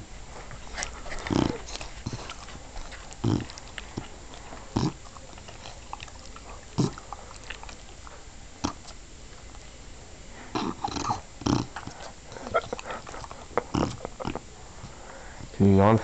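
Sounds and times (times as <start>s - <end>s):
dog snoring: 1.1s - 2.5s, 3.1s - 7.8s, 10.5s - 14.4s.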